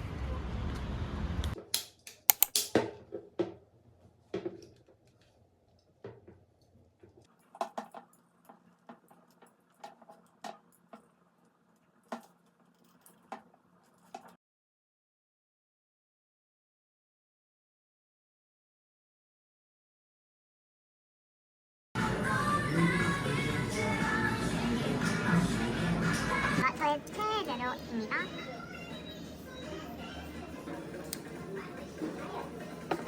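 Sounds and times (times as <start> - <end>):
sharp clicks and knocks: 1.7 - 2.9.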